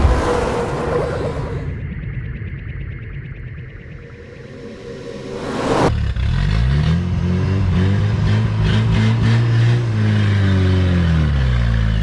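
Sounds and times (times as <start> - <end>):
engine revving hard: 0.0 - 1.8.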